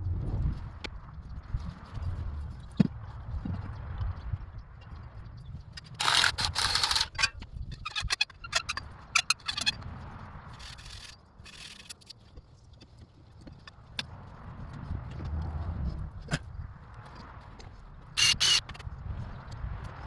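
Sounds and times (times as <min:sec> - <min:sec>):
sharp clicks: 0:05.8 - 0:09.6
scraping: 0:05.8 - 0:09.8.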